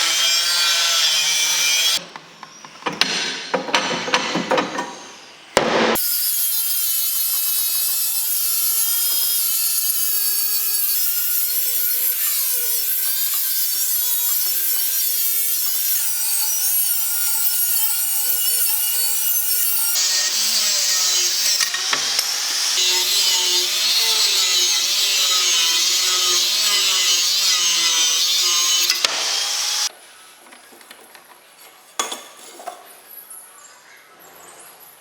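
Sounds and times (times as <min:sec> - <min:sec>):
power tool motor whine: 0:19.9 - 0:29.9.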